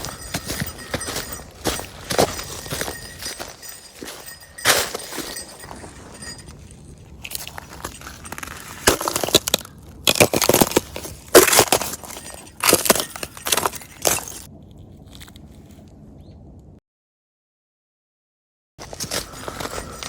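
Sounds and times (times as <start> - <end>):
footsteps crunching dry leaves: 0.0 - 6.5, 7.1 - 14.5, 18.8 - 20.0.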